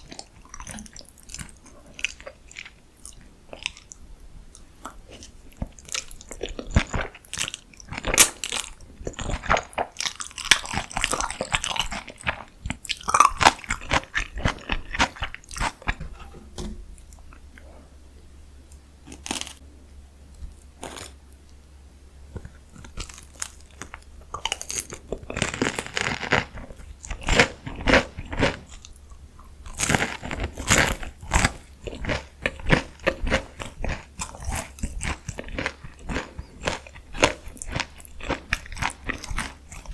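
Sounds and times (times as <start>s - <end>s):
soft chewing: 0.0s - 21.6s, 22.3s - 39.9s
crunchy bites into fried food: 5.7s - 16.0s, 22.4s - 29.0s, 29.7s - 39.9s.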